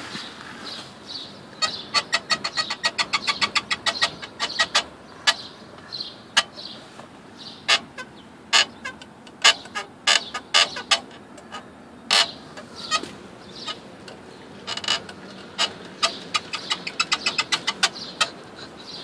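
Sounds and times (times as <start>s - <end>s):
car seat creaking: 0.0s - 0.9s, 12.1s - 18.4s.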